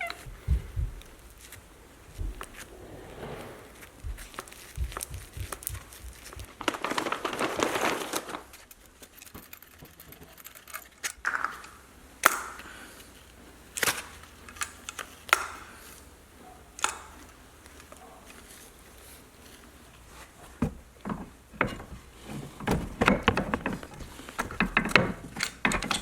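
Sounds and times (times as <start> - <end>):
rustle: 0.0 - 20.6.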